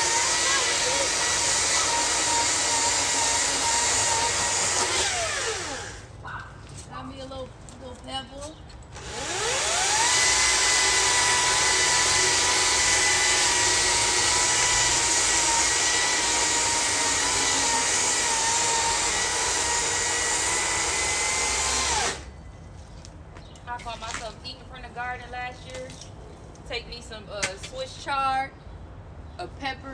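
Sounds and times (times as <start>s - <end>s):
power tool motor whining: 0.0s - 6.2s, 9.0s - 22.4s.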